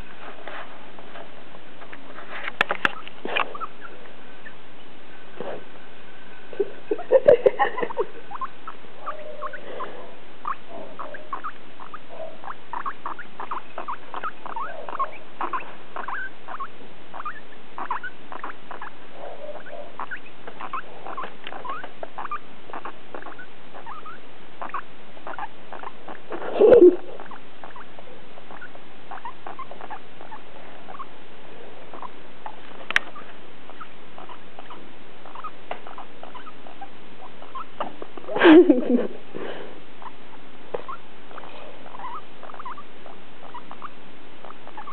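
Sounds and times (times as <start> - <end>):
guinea pig clicking: 10.4 - 19.0, 19.6 - 26.4, 27.2 - 27.9, 31.9 - 37.8, 40.7 - 44.9.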